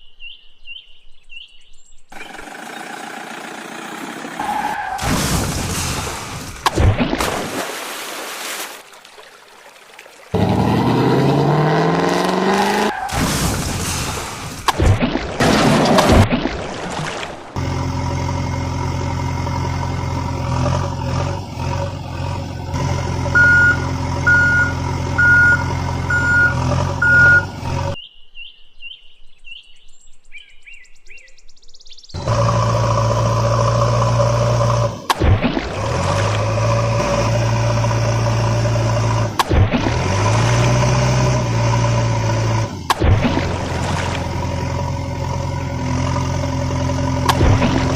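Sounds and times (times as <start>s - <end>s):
heavy vehicle engine running: 2.2s - 6.7s, 17.6s - 28.0s, 32.2s - 47.9s
reversing alarm beeping: 23.2s - 27.6s.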